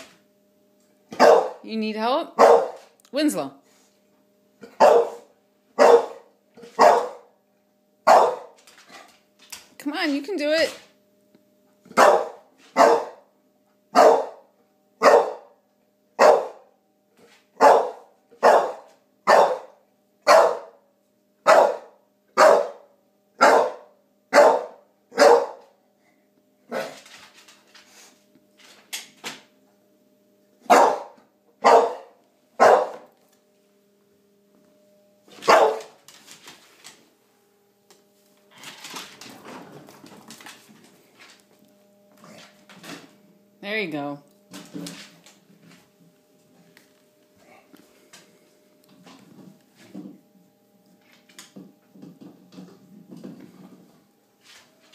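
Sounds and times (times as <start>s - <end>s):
dog barking: 1.1s - 1.6s, 2.4s - 2.9s, 4.7s - 7.3s, 8.1s - 8.6s, 12.0s - 13.2s, 13.9s - 14.4s, 15.0s - 15.5s, 16.2s - 16.7s, 17.6s - 20.8s, 21.4s - 25.6s, 26.7s - 27.0s, 30.7s - 33.1s, 35.5s - 36.0s
rustling scuffling noise: 34.7s - 43.3s, 52.8s - 54.9s.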